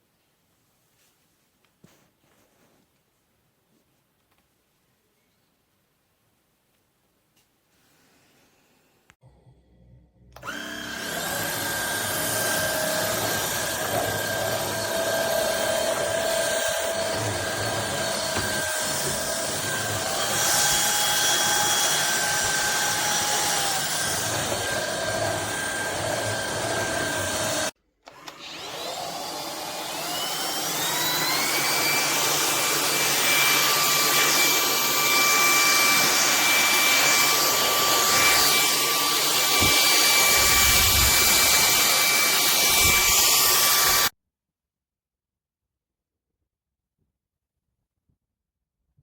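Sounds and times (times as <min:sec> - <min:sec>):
stick vacuum motor whine: 0:10.4 - 0:44.1.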